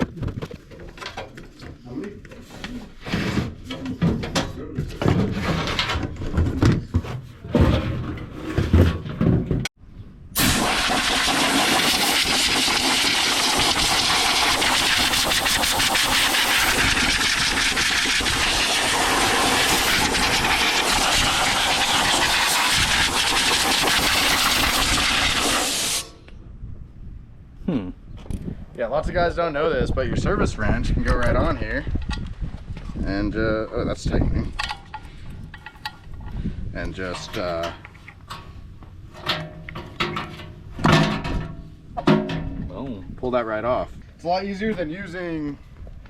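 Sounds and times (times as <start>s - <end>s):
parts knocking and clattering: 0.0s - 9.8s, 34.5s - 36.4s, 37.0s - 42.7s
air tool rushing air: 10.3s - 26.3s.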